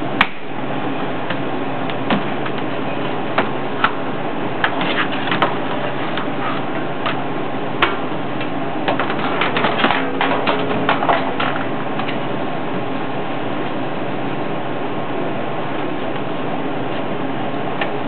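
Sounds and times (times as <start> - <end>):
steady background noise: 0.0 - 18.0.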